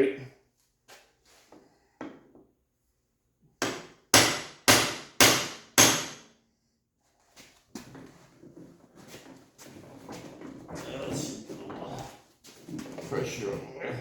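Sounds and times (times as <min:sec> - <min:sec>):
hammer striking metal: 0:03.6 - 0:06.3.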